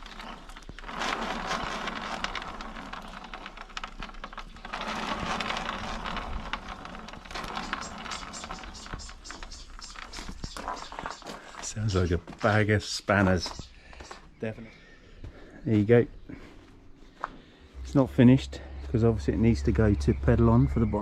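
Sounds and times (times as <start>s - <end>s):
bike bearings grinding and crackling: 0.0s - 14.2s.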